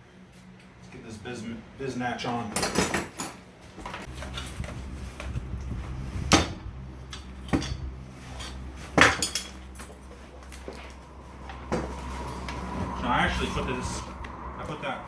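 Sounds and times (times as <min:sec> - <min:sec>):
metal tools clinking and knocking: 0:02.5 - 0:03.4, 0:07.1 - 0:10.9
steady low hum: 0:03.4 - 0:15.0.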